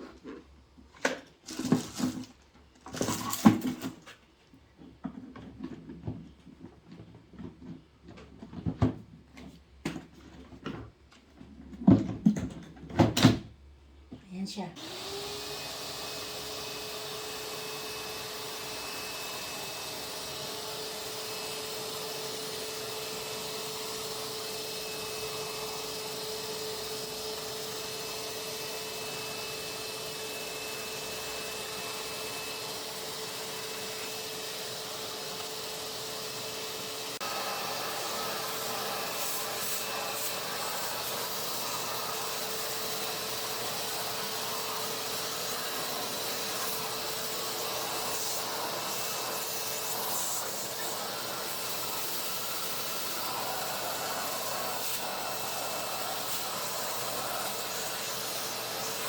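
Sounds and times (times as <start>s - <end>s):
vacuum cleaner motor whine: 14.8s - 59.0s.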